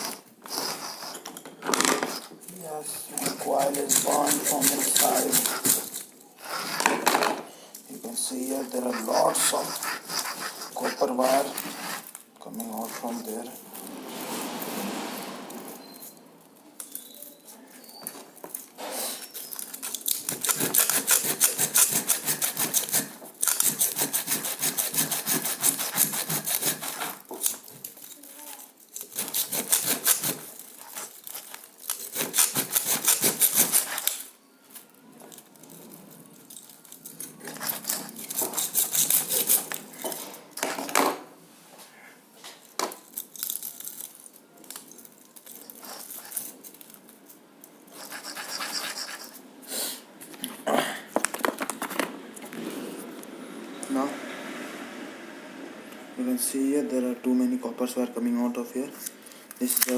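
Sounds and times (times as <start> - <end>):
saw cutting copper windings: 3.1 - 6.8, 8.3 - 13.4, 19.3 - 28.2, 28.9 - 34.2, 37.0 - 39.8.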